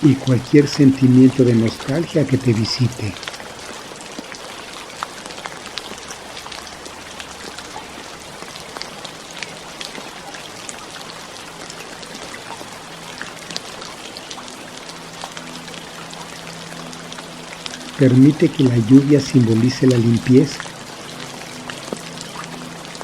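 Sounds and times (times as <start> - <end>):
raindrops striking close by: 0.0 - 23.0
steady rain falling: 0.0 - 23.0.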